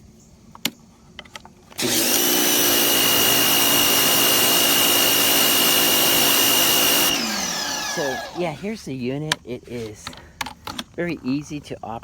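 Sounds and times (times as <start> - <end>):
pressure washer motor whining: 1.8 - 8.7.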